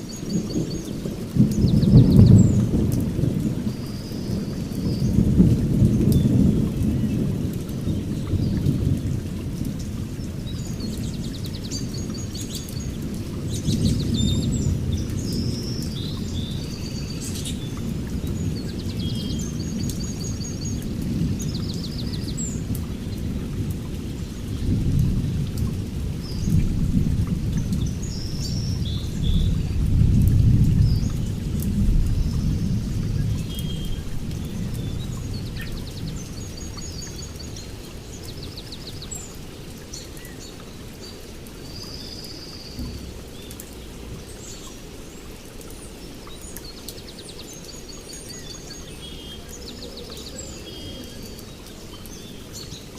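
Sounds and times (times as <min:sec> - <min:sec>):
birds chirping: 0:00.0 - 0:25.5, 0:27.5 - 0:52.9
rain falling: 0:00.0 - 0:52.9
thunder rolling: 0:01.4 - 0:10.1.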